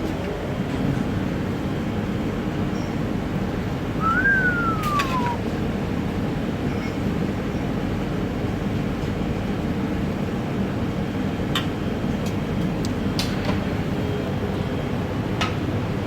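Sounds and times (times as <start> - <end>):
high falling squeak: 4.3 - 5.4.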